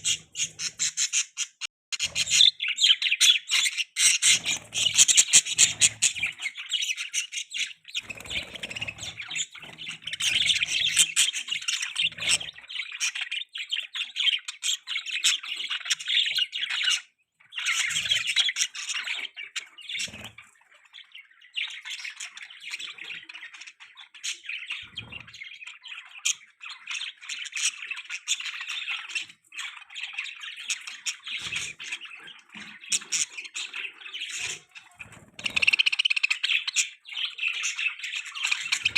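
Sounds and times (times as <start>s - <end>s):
budgerigar chirping and squawking: 0.0s - 20.8s, 21.6s - 38.9s.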